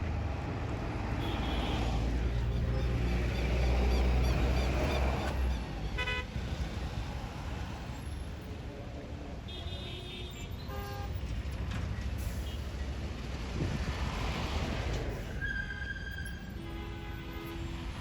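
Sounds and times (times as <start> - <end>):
road traffic: 0.0 - 18.0
vehicle horns honking: 1.2 - 2.0, 5.9 - 6.4, 9.5 - 11.2, 16.4 - 18.0.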